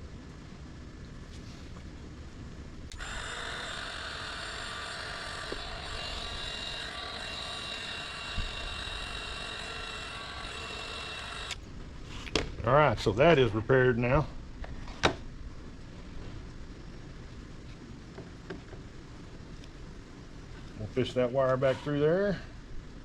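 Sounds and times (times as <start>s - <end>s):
heat gun blowing with motor whine: 2.9s - 11.6s.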